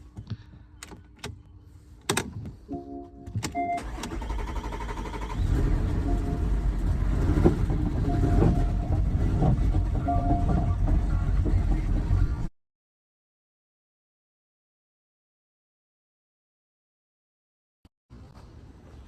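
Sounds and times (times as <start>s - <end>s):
car engine running unevenly: 3.3s - 12.5s
electronic chime tones: 6.0s - 6.8s, 8.0s - 9.0s, 10.0s - 10.7s.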